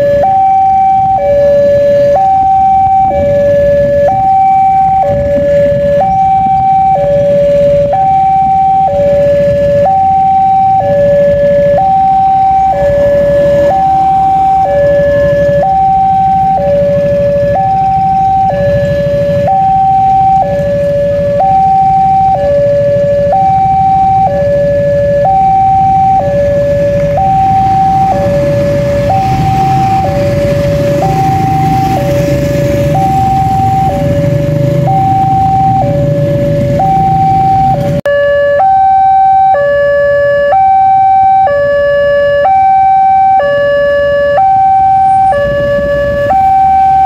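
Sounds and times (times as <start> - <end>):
two-tone level crossing siren: 0.0 - 47.0.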